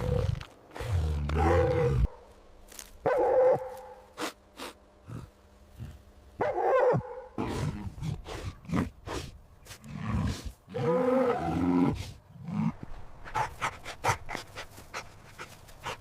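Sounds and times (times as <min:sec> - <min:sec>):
dog barking: 0:03.0 - 0:04.0, 0:06.4 - 0:07.3.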